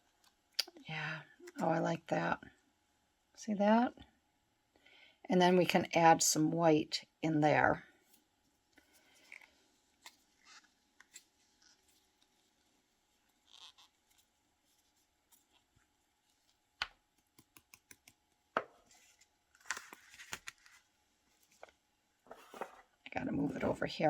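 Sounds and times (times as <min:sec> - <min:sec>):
small clicks and taps: 0:16.8 - 0:18.7.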